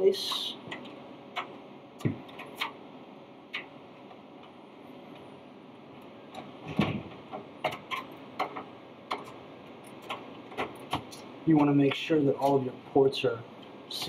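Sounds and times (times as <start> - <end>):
motherboard knocking in metal case: 6.4 - 9.4.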